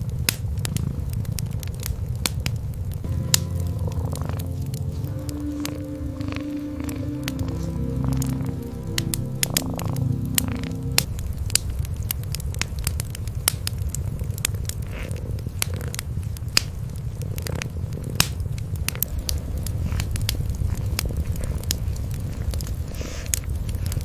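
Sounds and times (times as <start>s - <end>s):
wood fire crackling and popping: 0.0s - 24.0s
cats purring: 0.5s - 2.2s, 3.1s - 11.1s, 13.4s - 24.0s.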